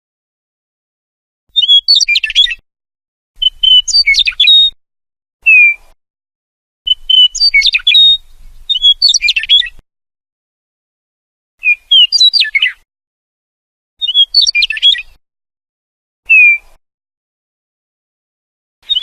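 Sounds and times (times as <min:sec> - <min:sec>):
meadowlark singing: 0:01.6 - 0:02.6, 0:03.4 - 0:04.8, 0:06.9 - 0:09.8, 0:11.6 - 0:12.8, 0:14.0 - 0:15.2.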